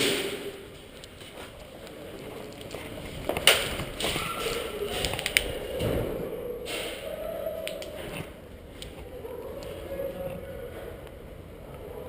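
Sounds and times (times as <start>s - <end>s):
sharp crack: 0.0s - 1.2s, 2.5s - 9.0s.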